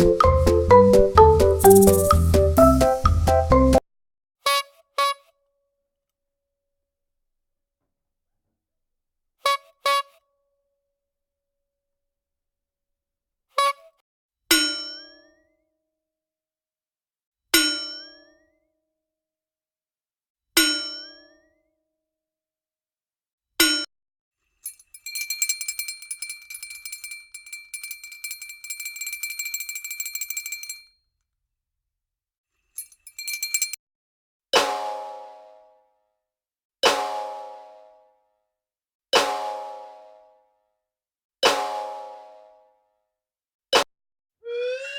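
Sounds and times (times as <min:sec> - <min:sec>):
metallic bell jingling: 0:01.6 - 0:02.2, 0:24.6 - 0:30.9, 0:32.8 - 0:33.8.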